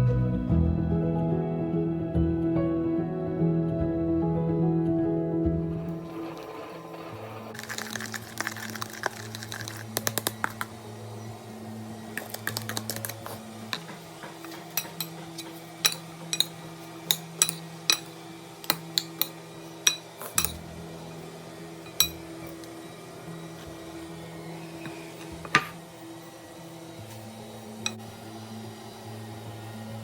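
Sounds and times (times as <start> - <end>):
background music with held notes: 0.0 - 30.0
utensil clinking on dish: 12.2 - 20.6, 21.9 - 22.7.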